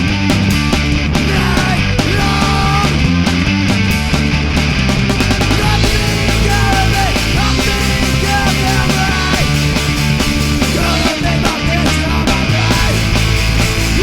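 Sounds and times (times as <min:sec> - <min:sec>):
loud rock music: 0:00.0 - 0:14.0.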